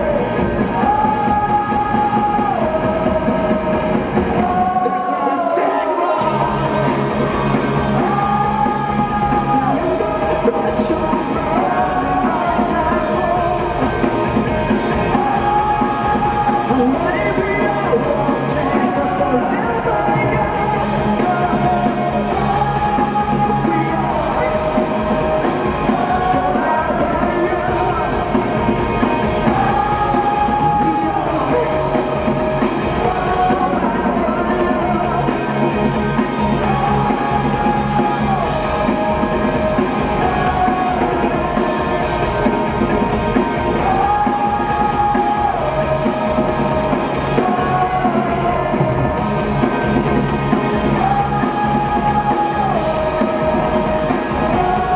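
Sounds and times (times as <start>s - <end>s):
live rock band playing: 0.0s - 54.9s.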